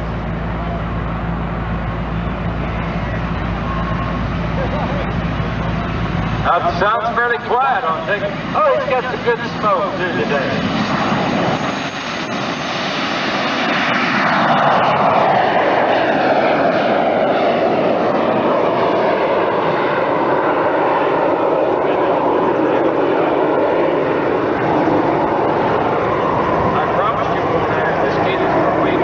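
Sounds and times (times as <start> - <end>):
airplane engine flying past: 0.0 - 29.0.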